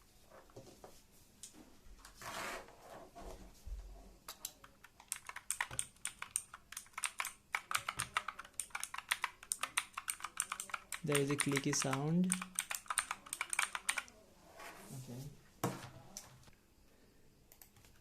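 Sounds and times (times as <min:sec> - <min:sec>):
clicky keyboard typing: 0:04.3 - 0:14.1.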